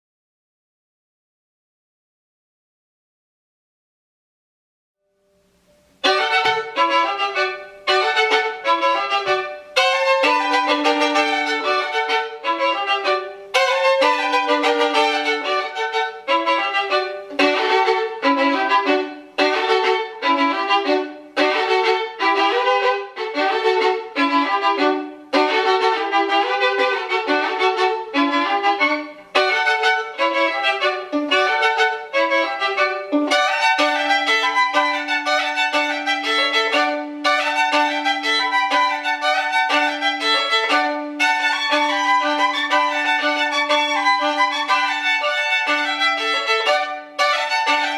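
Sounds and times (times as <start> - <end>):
slow violin piece: 5.4 - 47.9.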